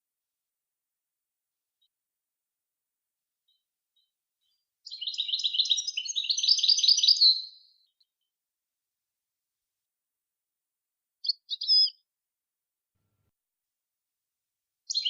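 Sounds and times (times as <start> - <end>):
songbird chirping: 3.4 - 8.4, 11.2 - 12.1.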